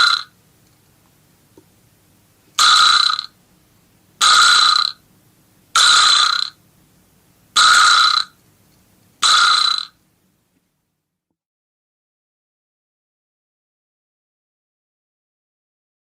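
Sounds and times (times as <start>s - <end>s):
vibraslap buzzing rattle: 0.0s - 0.3s, 2.6s - 3.4s, 4.2s - 5.0s, 5.8s - 6.6s, 7.6s - 8.4s, 9.2s - 10.0s.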